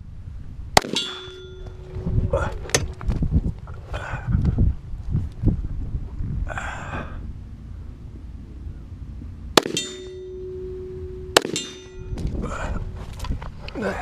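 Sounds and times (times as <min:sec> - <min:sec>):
pistol shot: 0:00.8 - 0:01.2, 0:09.6 - 0:09.9, 0:11.4 - 0:11.8
steel target ringing: 0:00.8 - 0:03.6, 0:09.6 - 0:13.0.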